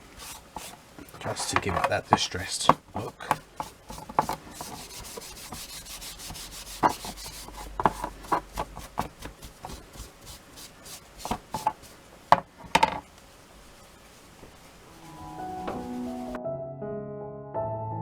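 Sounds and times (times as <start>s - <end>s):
hand scraping wooden board: 0.0s - 16.4s
board knocking against table: 0.3s - 10.2s, 11.2s - 13.1s, 15.6s - 16.0s.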